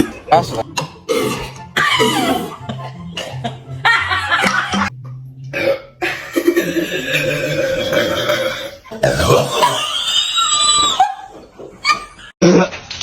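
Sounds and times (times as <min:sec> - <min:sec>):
person burping: 0:00.0 - 0:03.8, 0:05.5 - 0:10.6
background music with low notes: 0:00.0 - 0:09.6.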